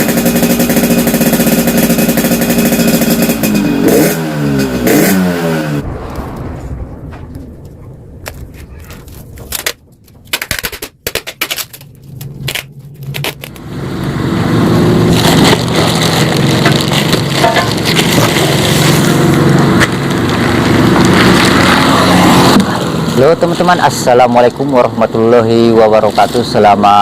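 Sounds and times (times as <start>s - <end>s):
two-stroke motorcycle engine running: 0.0s - 5.2s
exhaust cracks and pops: 6.0s - 13.7s, 15.1s - 24.8s.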